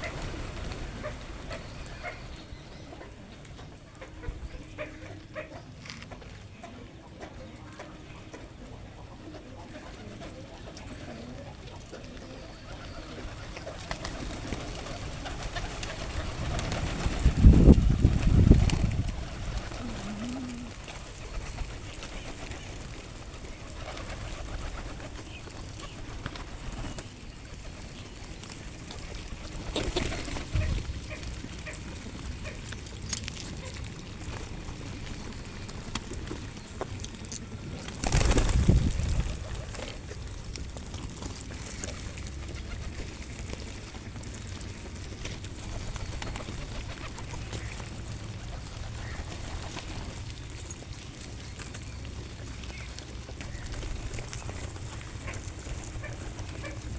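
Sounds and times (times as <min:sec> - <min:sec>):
pigeons cooing: 0:00.0 - 0:36.7, 0:52.2 - 0:56.9
steady outdoor hiss: 0:00.0 - 0:56.9.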